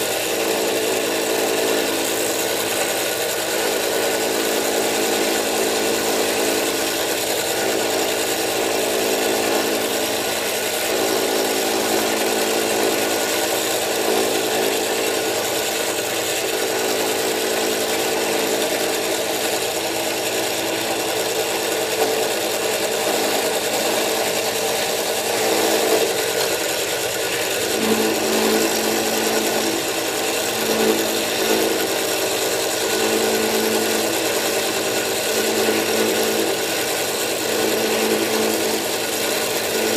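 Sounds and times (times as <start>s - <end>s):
end mill cutting metal: 0.0s - 39.9s
milling machine hum: 0.0s - 39.9s.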